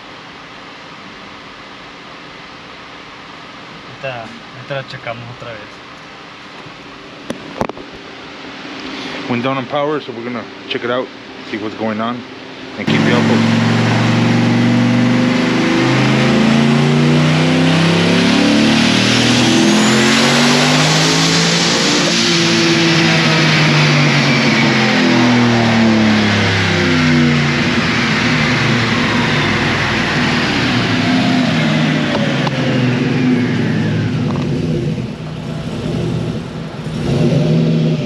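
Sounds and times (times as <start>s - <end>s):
high turbo whine: 0.0s - 38.0s
engine at full throttle: 8.7s - 38.0s.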